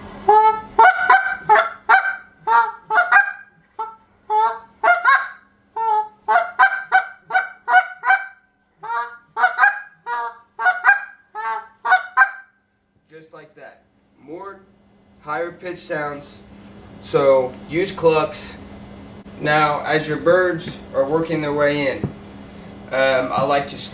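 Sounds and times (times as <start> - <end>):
goose call clucks and moans: 0.2 - 12.5.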